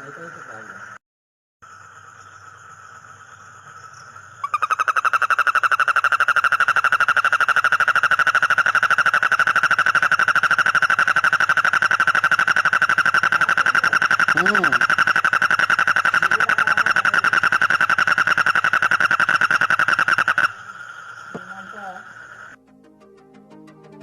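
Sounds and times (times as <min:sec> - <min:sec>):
frog pulsed trill: 0:01.6 - 0:22.6.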